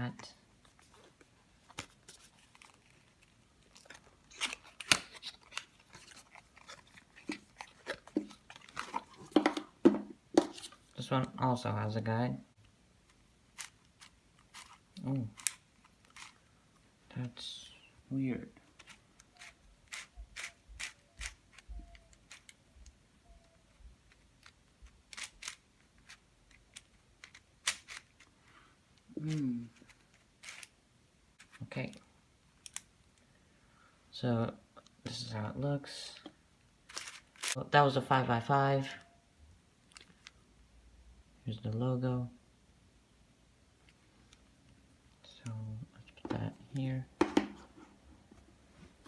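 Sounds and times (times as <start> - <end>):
hard plastic crackling and clicking: 1.7 - 10.7
plastic puzzle cube clicking: 13.6 - 16.4, 18.8 - 28.3, 29.8 - 30.7.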